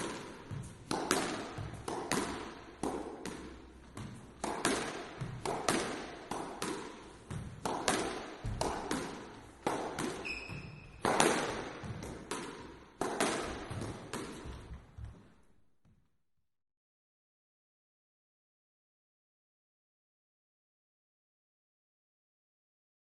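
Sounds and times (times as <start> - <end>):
squash ball cracks echoing: 0.0 - 15.3
brief squeak: 10.2 - 11.0.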